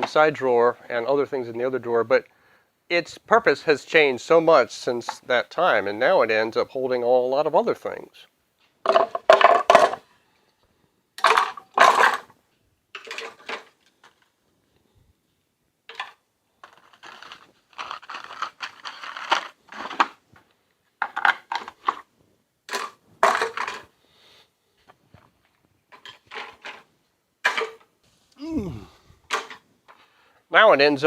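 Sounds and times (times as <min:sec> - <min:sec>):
tools clattering in wooden toolbox: 0:08.8 - 0:10.0, 0:11.2 - 0:12.3, 0:12.9 - 0:14.2, 0:21.0 - 0:22.1, 0:22.7 - 0:23.9, 0:25.9 - 0:27.9, 0:29.3 - 0:29.6.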